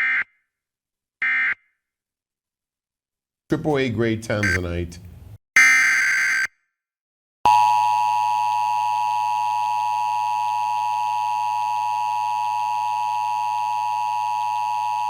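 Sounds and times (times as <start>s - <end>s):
screeching data header: 4.4s - 4.6s
two-tone alert signal: 4.4s - 4.6s.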